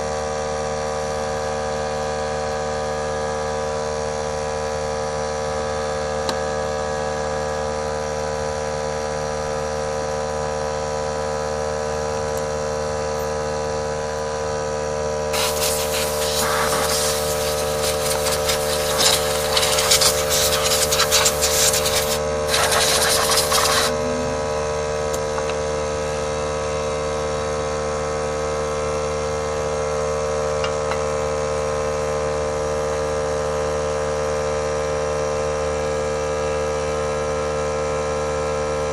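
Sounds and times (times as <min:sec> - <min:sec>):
harsh noisy rasp: 0:15.3 - 0:24.6
small engine running: 0:15.3 - 0:25.2.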